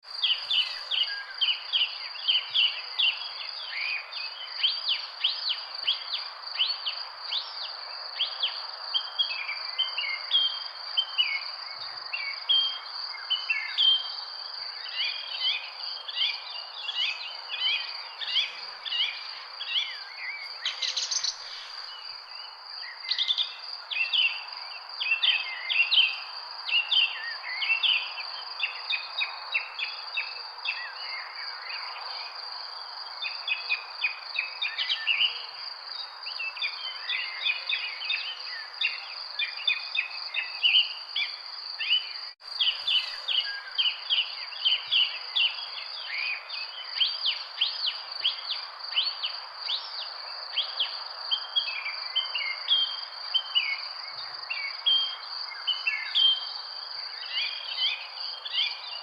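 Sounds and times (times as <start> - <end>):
background hiss: 0.1 - 9.8, 12.8 - 38.1, 41.2 - 59.0
birds chirping and calling: 0.2 - 1.5, 42.5 - 44.0
high insect trill: 40.1 - 49.7.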